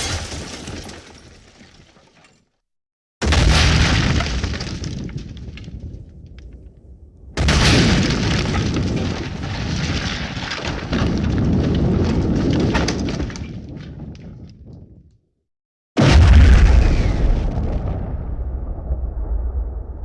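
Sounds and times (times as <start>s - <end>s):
explosion blast with crackling rumble: 3.2s - 15.1s, 16.0s - 20.0s.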